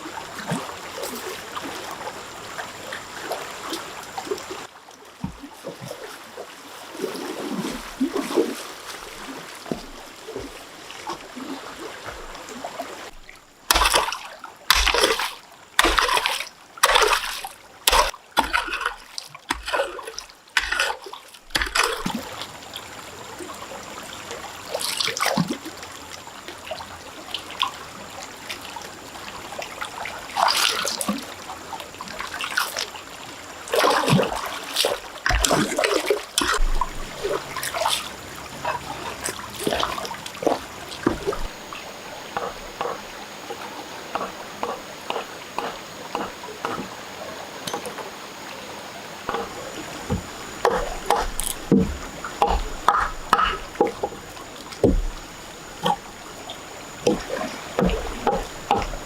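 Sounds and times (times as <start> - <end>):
water trickling: 0.0 - 59.0
loud water splashes: 6.9 - 22.4, 33.7 - 47.4.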